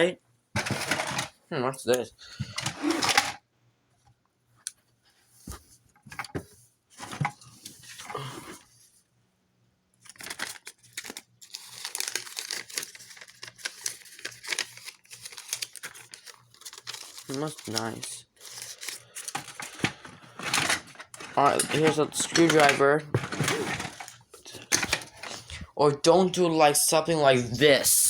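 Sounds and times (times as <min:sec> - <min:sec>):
rustling and crinkling: 0:10.0 - 0:25.6.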